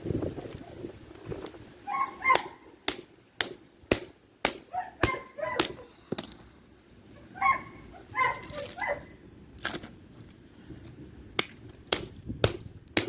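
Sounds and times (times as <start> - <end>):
hammer striking steel padlock: 2.3 - 5.8, 11.4 - 13.0.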